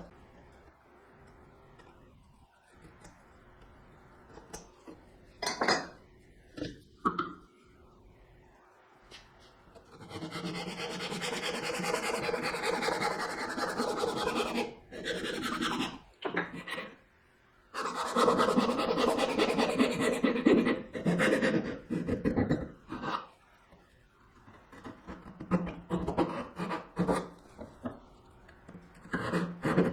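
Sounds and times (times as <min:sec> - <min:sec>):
hand saw cutting wood: 0:24.8 - 0:27.3.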